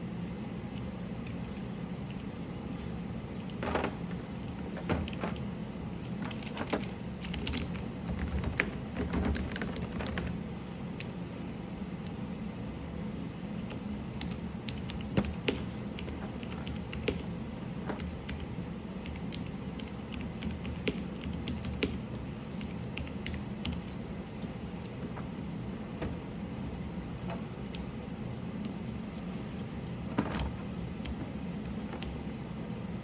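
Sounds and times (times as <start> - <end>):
steady low hum: 0.0 - 33.0
mechanical keyboard typing: 4.4 - 10.4, 13.6 - 17.3, 17.9 - 24.0.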